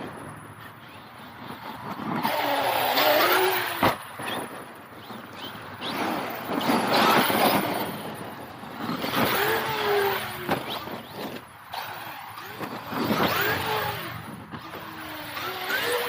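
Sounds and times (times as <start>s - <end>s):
tyres rushing on dirt: 0.0s - 16.0s
electric motor whining: 0.8s - 16.0s.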